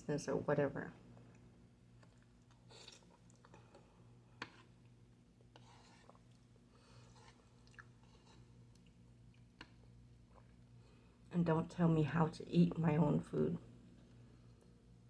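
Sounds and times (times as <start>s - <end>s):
faint chewing and mouth sounds: 1.1s - 11.3s, 13.7s - 15.0s.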